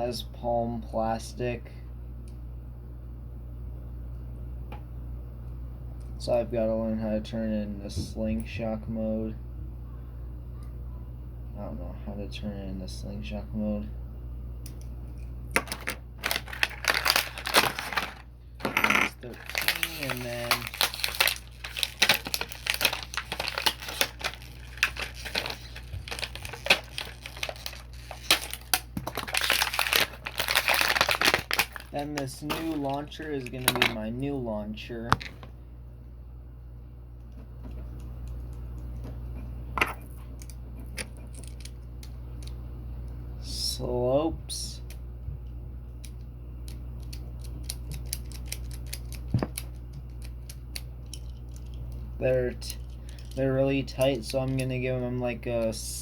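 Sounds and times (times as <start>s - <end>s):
plastic packaging crinkling: 15.6s - 34.0s.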